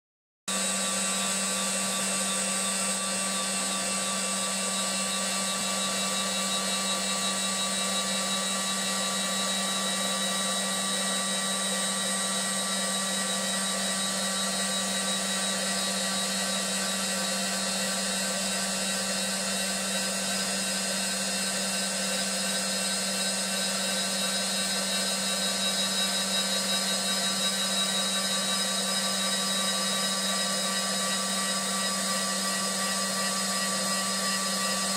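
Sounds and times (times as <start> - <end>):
wood lathe running: 25.4 - 34.9.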